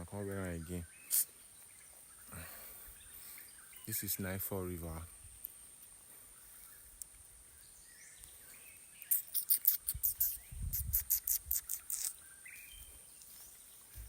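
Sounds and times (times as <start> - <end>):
high scratchy chirps: 9.0 - 12.2.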